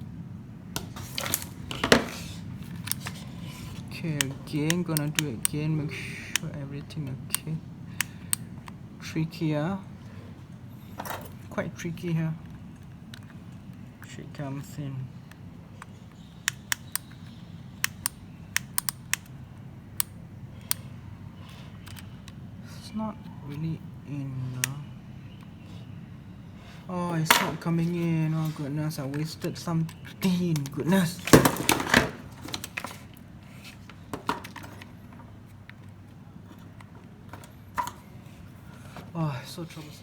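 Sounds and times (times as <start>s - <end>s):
soldering gun plastic clicks: 3.8s - 8.8s, 15.3s - 19.4s, 20.0s - 20.9s.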